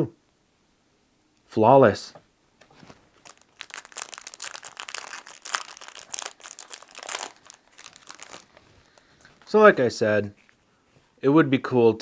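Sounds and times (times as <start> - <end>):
foil wrapper crinkling: 2.7 - 9.6.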